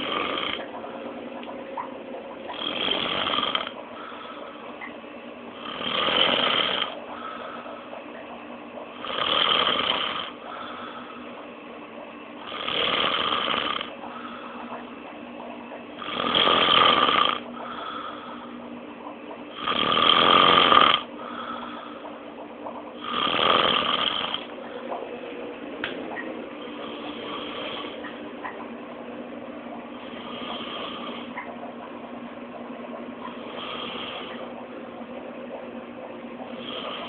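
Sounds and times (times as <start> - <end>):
person snoring loudly: 0.0 - 0.7, 2.5 - 3.8, 5.6 - 7.0, 9.0 - 10.4, 12.4 - 13.9, 16.0 - 18.0, 19.5 - 21.5, 23.0 - 24.5, 30.0 - 31.3, 33.4 - 34.4, 36.6 - 37.0
quiet breathing: 3.6 - 4.9, 5.7 - 8.1, 9.9 - 11.5, 13.8 - 14.9, 17.4 - 18.7, 21.1 - 22.3.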